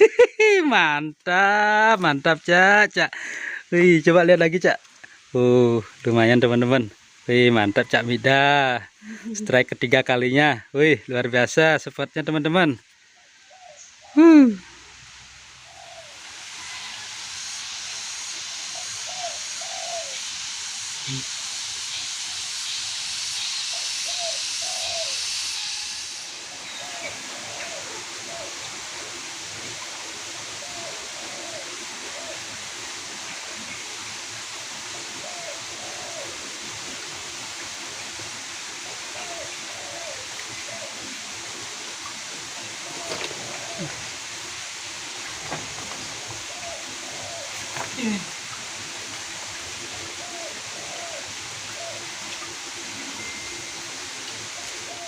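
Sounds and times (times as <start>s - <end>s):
high-pitched hiss: 0.0s - 55.0s
faint bird calls: 23.4s - 28.7s, 39.1s - 41.3s, 42.8s - 44.1s, 46.2s - 48.4s
river water rushing: 26.1s - 55.0s
faint short falling calls: 42.9s - 44.1s, 45.4s - 48.4s.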